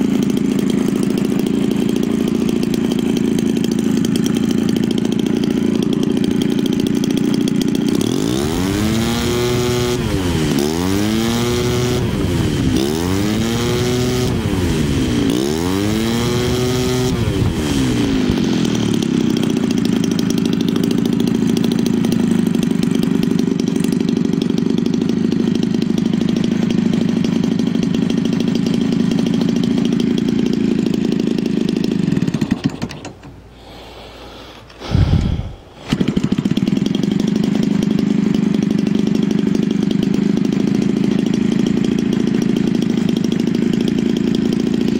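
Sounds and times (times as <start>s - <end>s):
small two-stroke engine revving: 0.0s - 44.9s.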